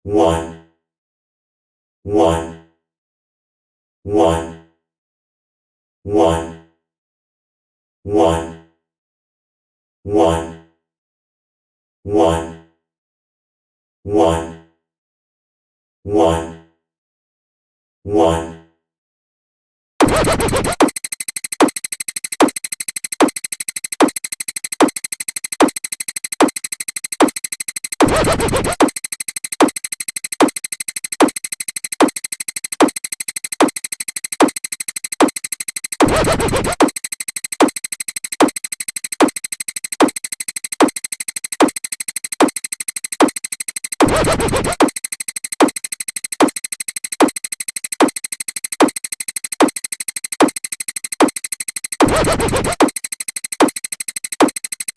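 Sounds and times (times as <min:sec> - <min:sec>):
dj scratch: 0:20.0 - 0:21.0, 0:24.8 - 0:42.6
electronic kick drum: 0:20.0 - 0:51.4
steady high synthesizer tone: 0:20.0 - 0:54.9.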